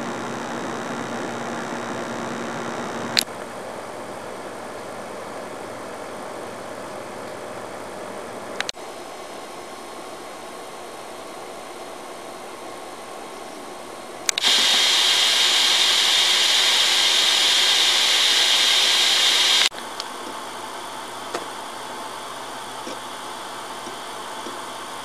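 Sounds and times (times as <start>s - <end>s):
computer fans hissing: 0.0s - 25.0s
loud high rush of air: 14.4s - 19.7s.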